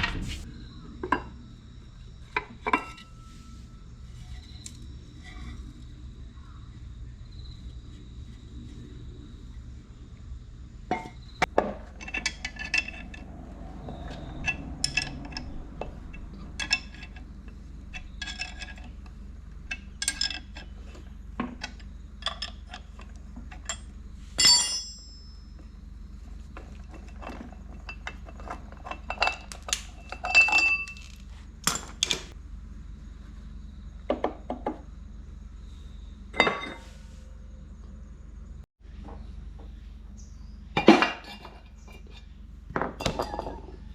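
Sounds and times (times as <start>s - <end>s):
steady low hum: 0.0s - 43.9s
hand tools clinking on metal parts: 12.0s - 13.4s, 23.6s - 25.6s.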